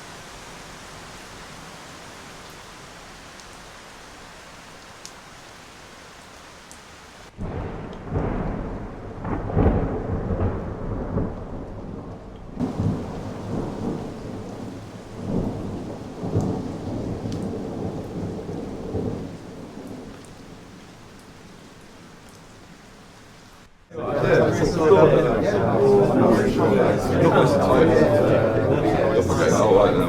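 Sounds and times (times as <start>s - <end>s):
rain hiss: 0.0s - 30.0s
rolling thunder rumble: 7.3s - 21.5s.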